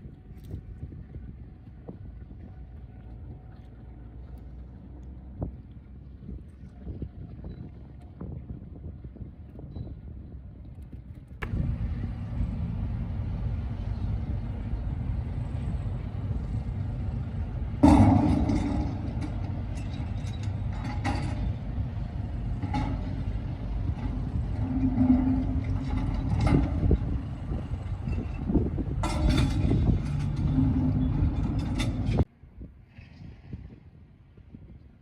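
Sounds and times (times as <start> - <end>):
traffic rumble: 10.4 - 32.4.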